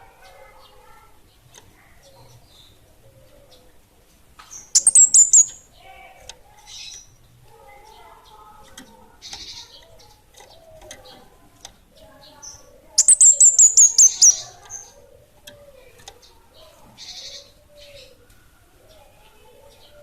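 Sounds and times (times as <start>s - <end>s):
bird chirps and soft calls: 4.5s - 7.2s, 11.9s - 18.2s
songbird high wavering trill: 4.8s - 5.7s, 13.0s - 14.5s.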